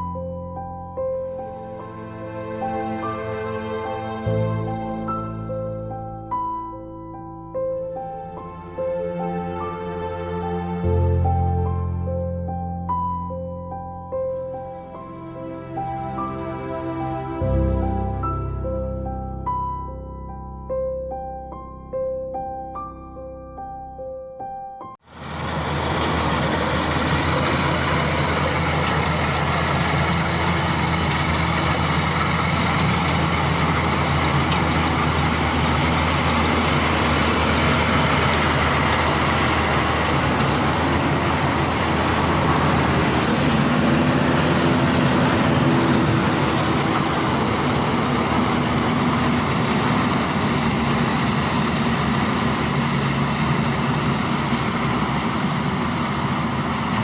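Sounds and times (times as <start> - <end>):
combine harvester engine drone: 25.0 - 57.0.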